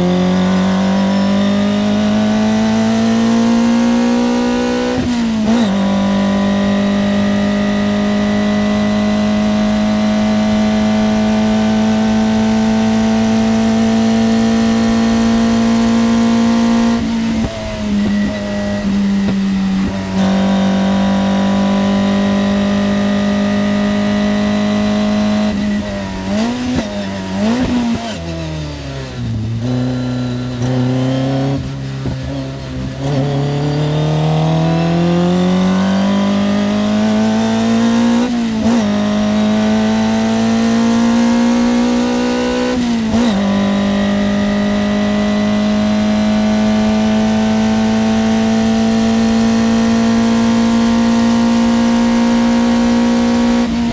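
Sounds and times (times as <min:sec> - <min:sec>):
race car engine at high revs: 0:00.0 - 0:53.9.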